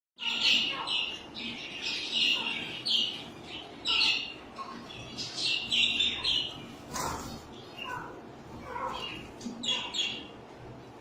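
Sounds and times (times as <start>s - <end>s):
cage birds chirping: 0.2s - 11.0s.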